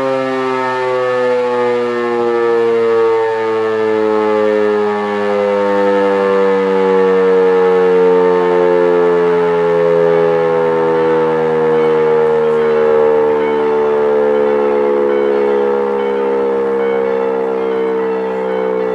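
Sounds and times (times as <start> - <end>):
electric siren wailing: 0.0 - 18.9.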